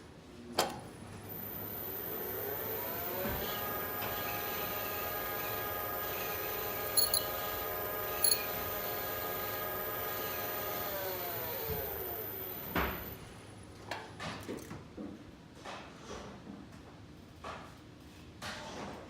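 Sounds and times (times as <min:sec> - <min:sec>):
lift motor whining: 0:01.2 - 0:13.3
short high squeaks: 0:07.0 - 0:07.3.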